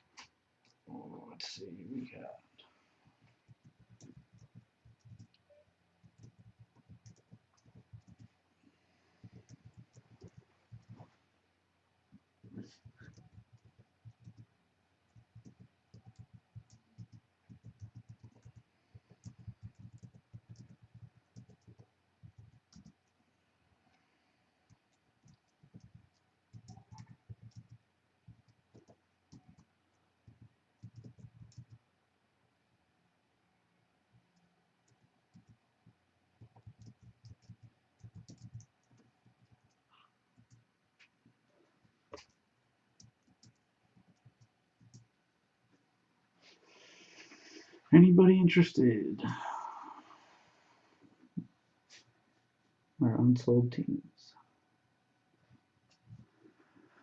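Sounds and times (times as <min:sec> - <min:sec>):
faint irregular clicks and taps: 0:00.0 - 0:00.8, 0:02.6 - 0:11.2, 0:12.1 - 0:31.9, 0:34.1 - 0:45.9, 0:55.4 - 0:57.0
faint keyboard typing: 0:00.0 - 0:11.3, 0:12.1 - 0:32.0, 0:34.1 - 0:45.9, 0:55.3 - 0:57.0.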